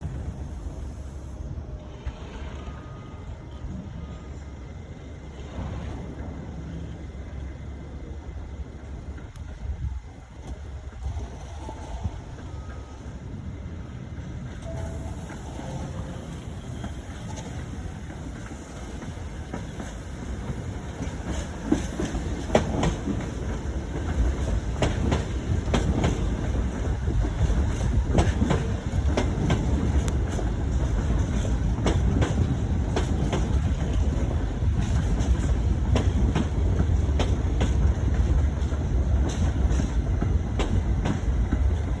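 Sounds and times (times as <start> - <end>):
subway train rumble: 0.0 - 42.0
wheels clacking over rail joints: 14.2 - 42.0.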